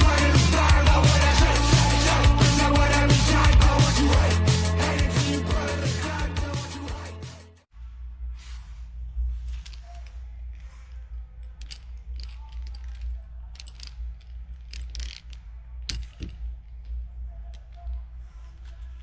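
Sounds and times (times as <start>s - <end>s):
small hard parts clattering: 9.5s - 19.0s.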